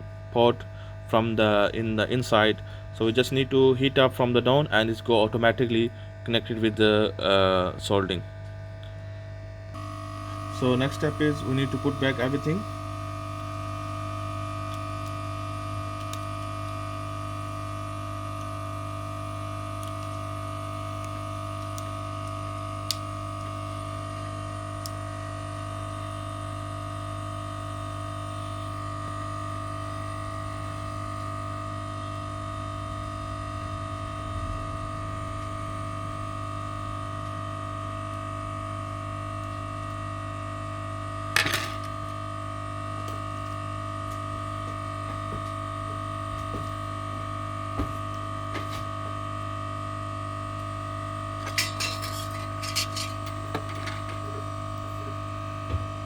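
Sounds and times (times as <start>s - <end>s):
steady electrical hum: 0.0s - 56.0s
clatter of parts or tools: 51.4s - 54.2s.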